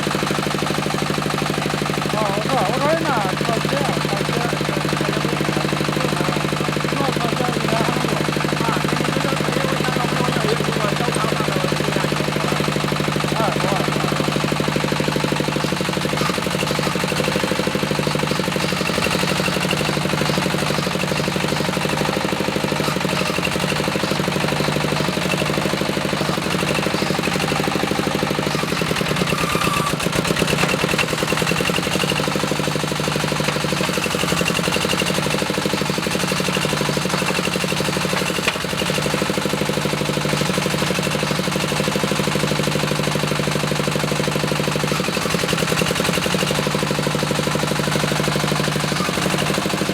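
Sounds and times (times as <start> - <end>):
diesel engine running: 0.0 - 49.9
drilling rig clatter: 0.1 - 49.9.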